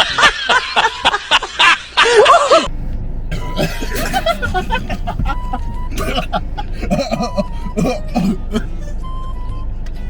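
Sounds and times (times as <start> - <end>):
person giggling: 3.4 - 8.7
background music: 3.4 - 10.0.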